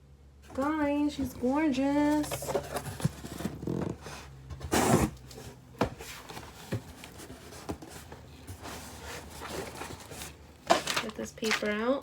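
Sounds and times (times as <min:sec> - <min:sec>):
handbag packaging rustling: 0:06.2 - 0:12.0.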